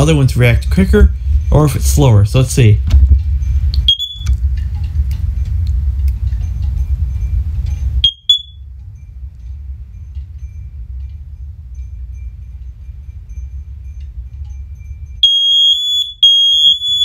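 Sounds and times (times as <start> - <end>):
loud low rumble: 0.0 - 15.2
faint scattered alarm beeps: 3.4 - 4.3, 6.5 - 9.2, 9.8 - 17.0
smoke alarm short high beeps: 3.8 - 4.3, 8.0 - 8.6, 15.2 - 17.0.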